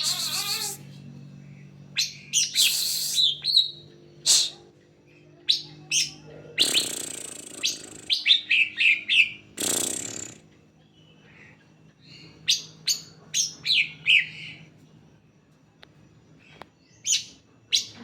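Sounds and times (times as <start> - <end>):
bird singing chirps and whistles: 0.0 - 0.8, 2.0 - 4.6
faint low hum: 0.0 - 18.0.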